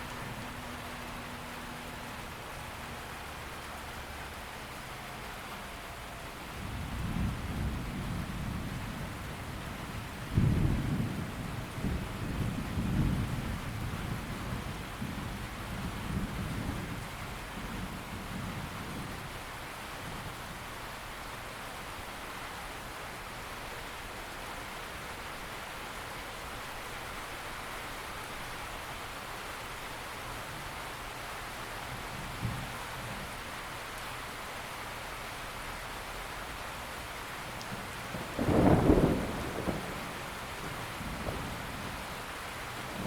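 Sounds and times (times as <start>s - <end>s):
steady rain falling: 0.0s - 43.0s
thunder rumbling and clapping: 6.9s - 19.1s, 37.6s - 42.2s.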